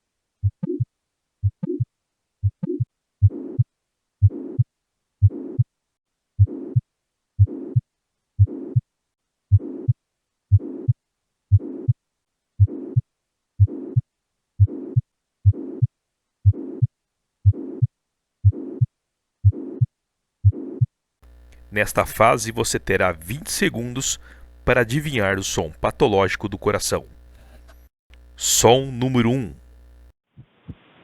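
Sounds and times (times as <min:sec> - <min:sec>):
heartbeat through stethoscope: 0:00.4 - 0:05.7, 0:06.4 - 0:06.8, 0:07.4 - 0:08.9, 0:09.5 - 0:12.0, 0:12.6 - 0:20.9
rough heart murmur: 0:00.4 - 0:05.7, 0:06.4 - 0:06.8, 0:07.4 - 0:07.8, 0:08.4 - 0:08.8, 0:09.5 - 0:12.0, 0:12.6 - 0:13.0, 0:13.6 - 0:14.0, 0:14.6 - 0:20.7.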